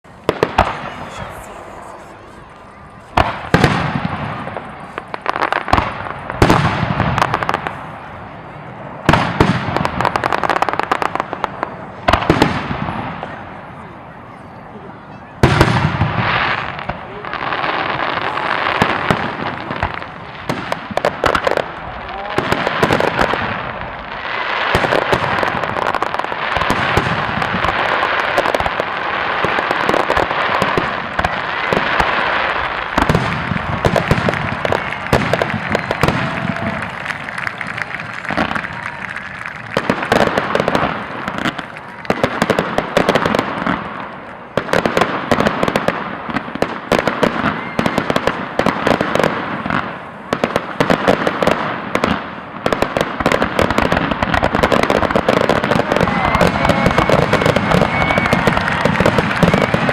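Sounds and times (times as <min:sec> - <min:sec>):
fireworks bangs and crackles: 0:00.0 - 0:59.9.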